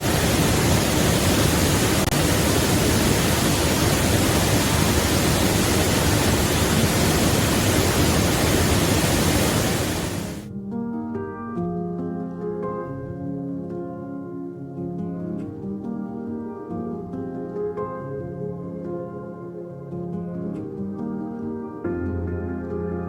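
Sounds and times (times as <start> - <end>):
waterfall roaring: 0.0 - 10.5.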